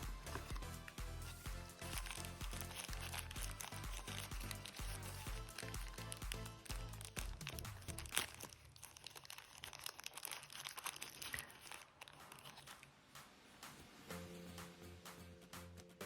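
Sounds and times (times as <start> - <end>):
background music: 0.0 - 8.4, 12.2 - 16.0
packaging crinkling and rustling: 0.0 - 12.9.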